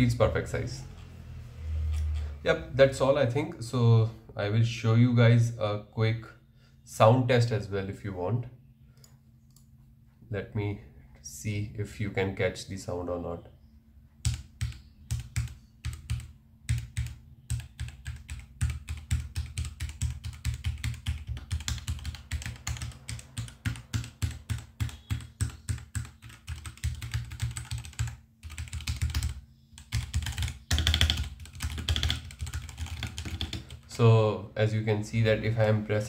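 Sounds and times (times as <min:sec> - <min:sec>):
mechanical keyboard typing: 0:14.2 - 0:33.8.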